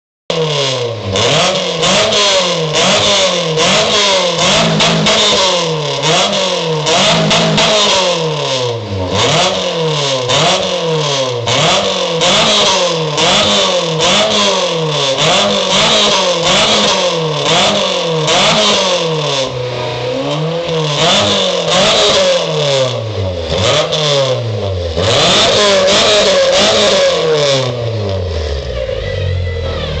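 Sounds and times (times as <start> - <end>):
small engine revving: 0.3 - 30.0
engine idling: 24.4 - 30.0.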